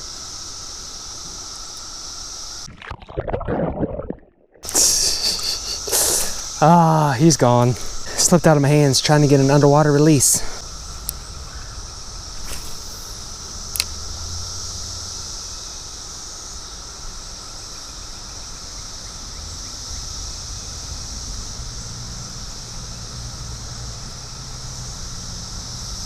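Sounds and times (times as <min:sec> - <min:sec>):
chorus of crickets: 0:00.0 - 0:02.7, 0:04.6 - 0:26.0
sharp click: 0:13.7 - 0:14.0.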